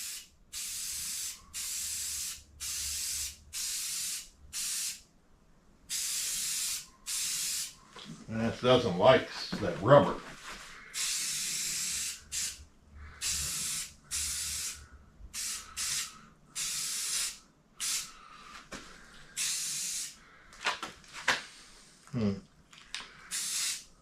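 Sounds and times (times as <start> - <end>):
spray paint can hissing: 0.0 - 5.0, 5.9 - 7.8, 11.0 - 12.6, 13.2 - 14.8, 15.4 - 18.1, 19.4 - 20.2, 23.3 - 23.9.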